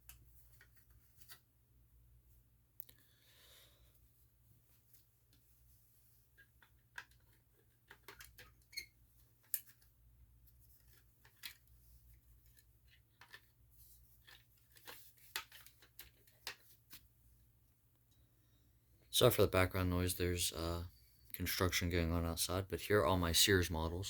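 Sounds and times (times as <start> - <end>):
plastic clicks and knocks: 6.4 - 8.7.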